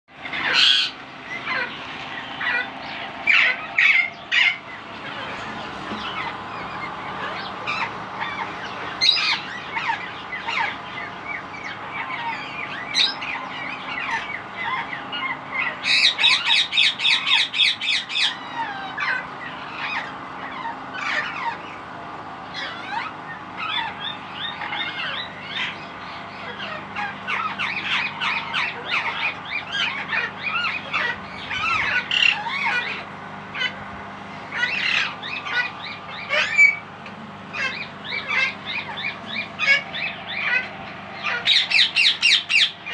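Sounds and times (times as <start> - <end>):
parakeets chirping: 0.1 - 42.9
harsh parakeet squawks: 0.3 - 4.7, 12.0 - 21.6, 22.6 - 33.8, 34.5 - 36.8, 37.5 - 42.9.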